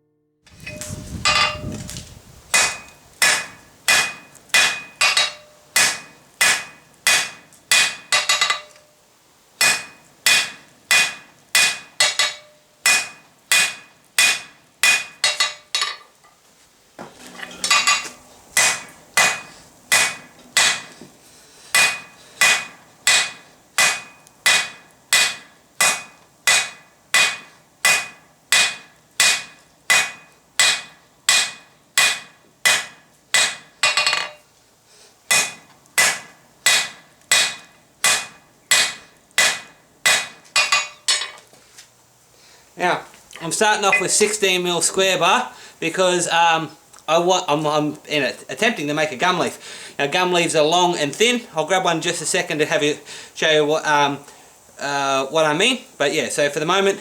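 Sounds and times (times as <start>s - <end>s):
hammer ringing on steel and anvil: 2.6s - 8.8s, 9.6s - 15.6s, 17.3s - 20.9s, 43.8s - 44.4s.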